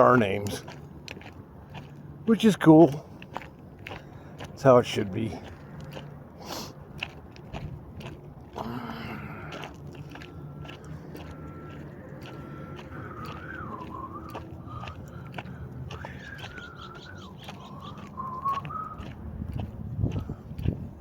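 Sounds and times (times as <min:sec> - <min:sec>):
footsteps crunching on trail: 0:00.0 - 0:21.0
wavering whistle: 0:12.6 - 0:14.9, 0:16.0 - 0:19.2.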